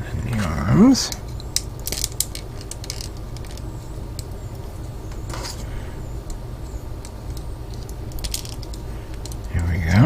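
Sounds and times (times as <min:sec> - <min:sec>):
steady low hum: 0:00.0 - 0:10.0
plastic parts clicking: 0:01.5 - 0:04.4, 0:07.0 - 0:09.8.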